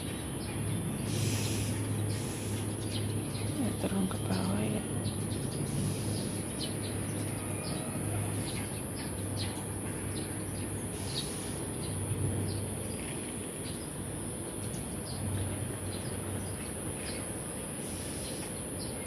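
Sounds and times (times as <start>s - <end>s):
wild birds chirping: 0.0s - 19.0s
steady high hiss: 0.9s - 3.3s, 5.5s - 8.1s, 10.5s - 15.3s, 16.0s - 19.0s.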